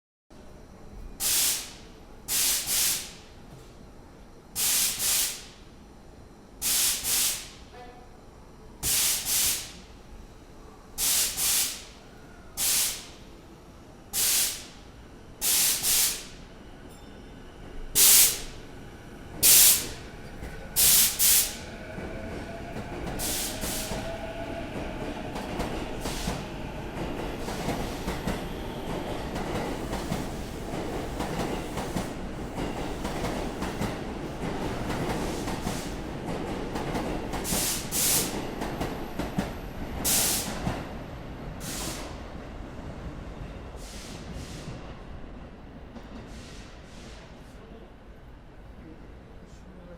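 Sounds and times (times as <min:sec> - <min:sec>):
air hissing bursts under train: 0:01.2 - 0:03.3, 0:04.6 - 0:05.6, 0:06.6 - 0:07.7, 0:08.8 - 0:09.9, 0:11.0 - 0:12.0, 0:12.6 - 0:13.2, 0:14.1 - 0:14.8, 0:15.4 - 0:16.4, 0:18.0 - 0:18.6, 0:19.4 - 0:20.1, 0:20.8 - 0:21.7, 0:23.2 - 0:24.2, 0:37.4 - 0:38.4, 0:40.0 - 0:40.6, 0:41.6 - 0:42.2, 0:43.8 - 0:44.8
train running noise: 0:11.0 - 0:47.5.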